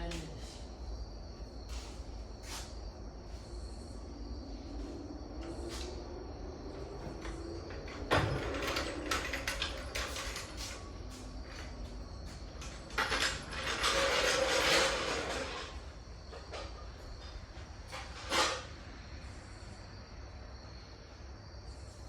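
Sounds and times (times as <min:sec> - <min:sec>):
mechanical knocks and clanks: 0:06.7 - 0:18.7.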